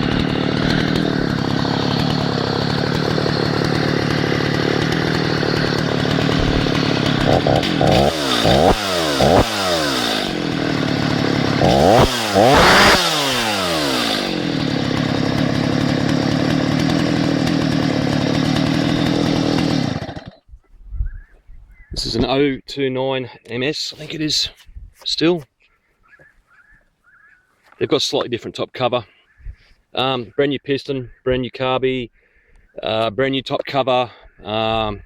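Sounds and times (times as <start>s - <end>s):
chainsaw idling and revving: 0.0s - 20.5s.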